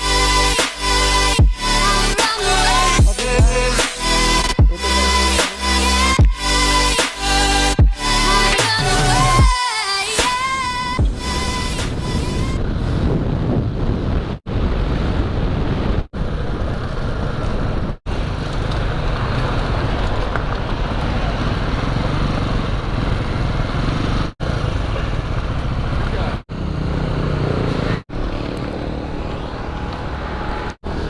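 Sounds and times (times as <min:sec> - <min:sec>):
wind rushing over microphone: 0:10.4 - 0:24.3
motorcycle engine running: 0:14.6 - 0:31.0.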